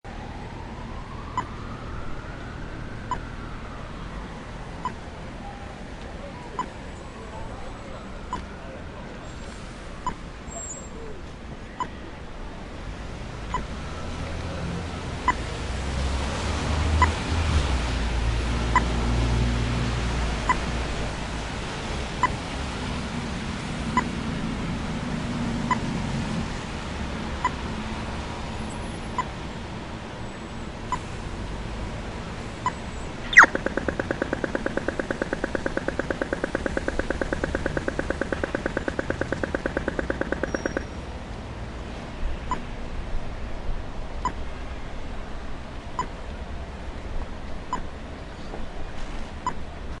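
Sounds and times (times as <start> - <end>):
low traffic rumble: 0.0 - 50.0
crossing signal locator beeps: 1.2 - 1.6, 3.0 - 3.3, 32.7 - 41.0
crossing signal rapid ticking: 2.9 - 3.5, 32.6 - 41.2.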